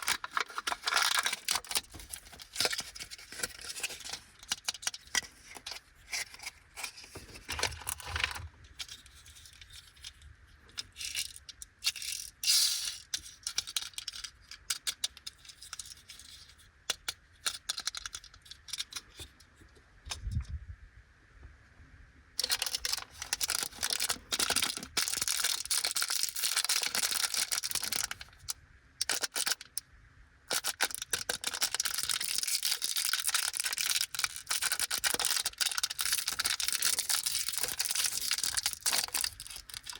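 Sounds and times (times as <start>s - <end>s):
plastic pieces clicking: 0.0s - 5.8s, 10.8s - 19.2s, 22.4s - 29.8s, 30.5s - 39.9s
plastic wrapper crinkling and tearing: 0.0s - 10.2s, 22.4s - 29.8s, 30.5s - 39.9s.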